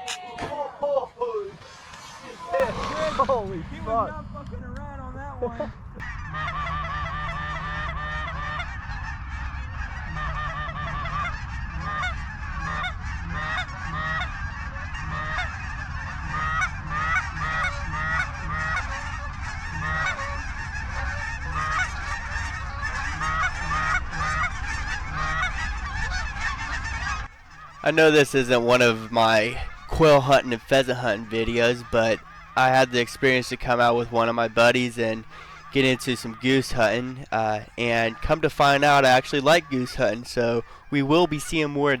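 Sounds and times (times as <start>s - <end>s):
geese honking: 1.5s - 4.2s, 5.5s - 42.0s
steady low rumble: 2.0s - 10.8s.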